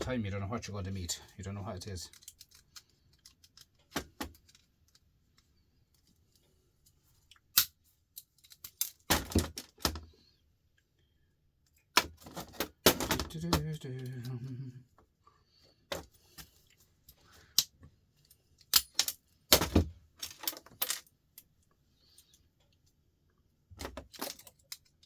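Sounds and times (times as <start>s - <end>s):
metal parts clinking and rattling: 2.0s - 6.1s, 7.5s - 10.1s, 15.9s - 21.5s, 23.8s - 25.0s.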